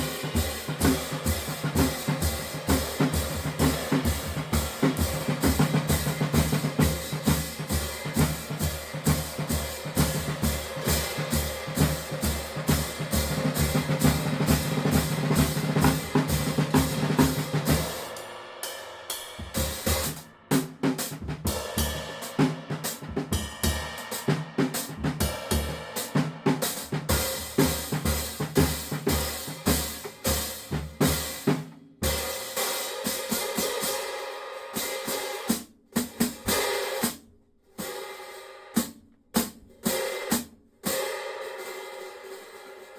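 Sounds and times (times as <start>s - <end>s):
cymbal: 0.0s - 37.2s, 37.8s - 42.9s
drum kit groove: 0.0s - 42.9s.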